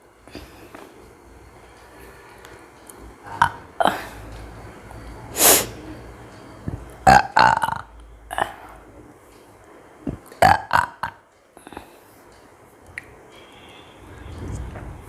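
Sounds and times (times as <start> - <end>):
woman burping: 3.3 - 4.2, 7.0 - 8.7, 10.4 - 11.2.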